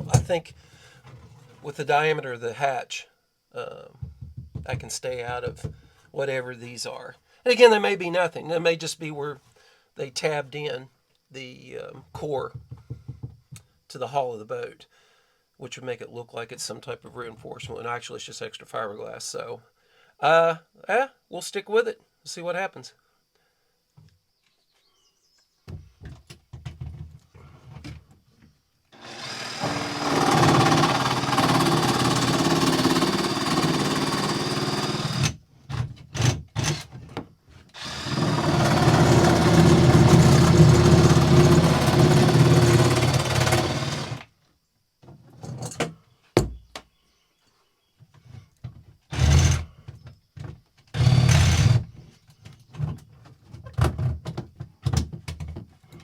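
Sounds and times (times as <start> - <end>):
electric drill boring: 29.0 - 35.4, 37.8 - 44.2, 51.0 - 51.8.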